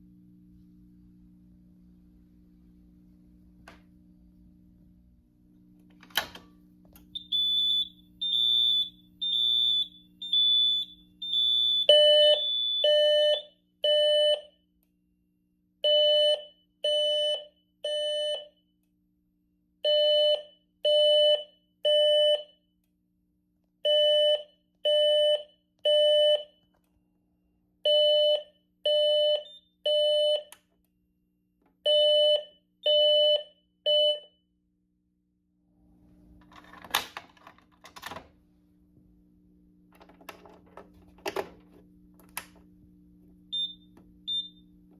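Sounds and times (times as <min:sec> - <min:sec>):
fire alarm pulses: 0:07.1 - 0:14.7, 0:15.8 - 0:18.8, 0:19.8 - 0:22.8, 0:23.8 - 0:26.6, 0:27.8 - 0:30.6, 0:31.8 - 0:34.5, 0:43.5 - 0:44.8
click: 0:30.5 - 0:31.0.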